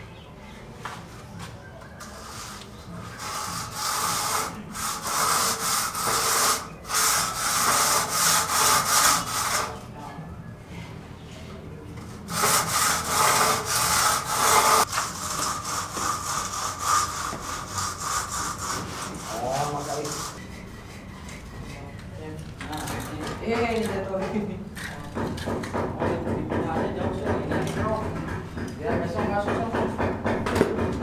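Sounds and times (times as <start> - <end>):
hand saw cutting wood: 2.0 - 9.9, 12.0 - 20.6.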